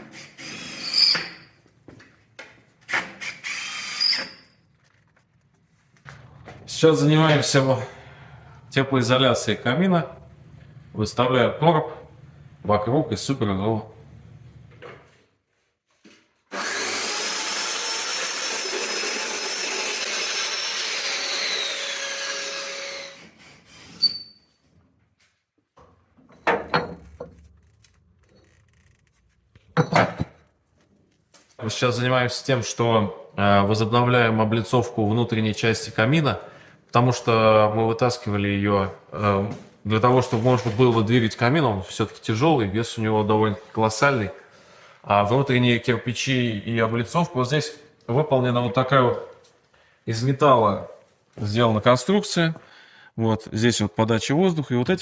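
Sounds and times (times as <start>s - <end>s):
power drill whining: 3.2s - 4.5s, 16.5s - 24.3s.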